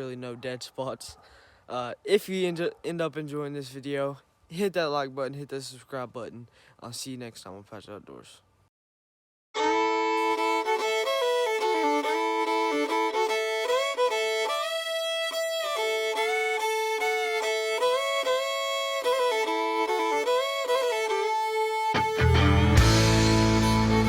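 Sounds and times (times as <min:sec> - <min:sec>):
fiddle playing lively tune: 0:09.6 - 0:24.0.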